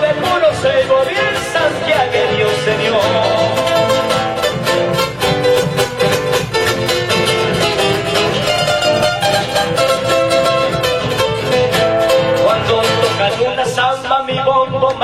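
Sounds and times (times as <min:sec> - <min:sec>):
person singing: 0:00.0 - 0:04.7, 0:11.9 - 0:15.0
bass drum: 0:00.0 - 0:15.0
strummed guitars: 0:00.0 - 0:15.0.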